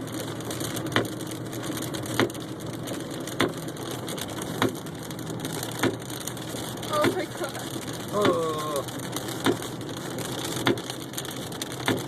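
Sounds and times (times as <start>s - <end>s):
car driving in rain rumble: 0.0s - 12.0s
windshield wipers knocking: 0.8s - 1.3s, 2.0s - 2.4s, 3.3s - 4.9s, 5.5s - 12.0s.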